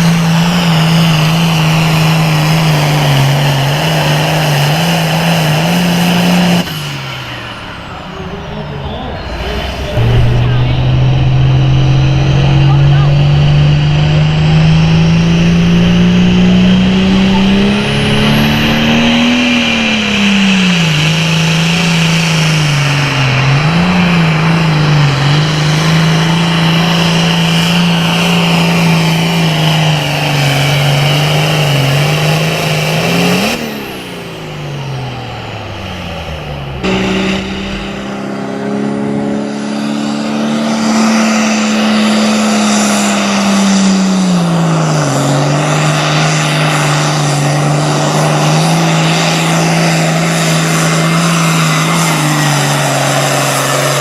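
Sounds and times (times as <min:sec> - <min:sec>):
tractor diesel engine under load: 0:00.0 - 0:54.0
high whine: 0:06.6 - 0:40.2.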